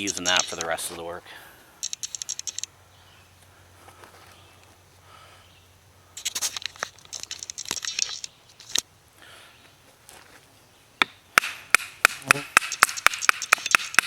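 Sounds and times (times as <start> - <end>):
tinder snapping: 0.0 - 0.8, 6.2 - 8.9
dry tinder crackling and tearing: 6.2 - 8.8.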